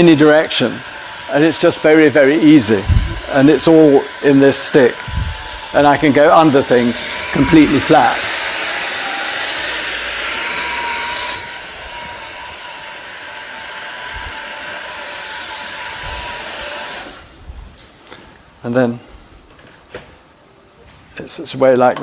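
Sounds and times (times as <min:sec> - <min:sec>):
vacuum cleaner whining: 0:00.0 - 0:17.4.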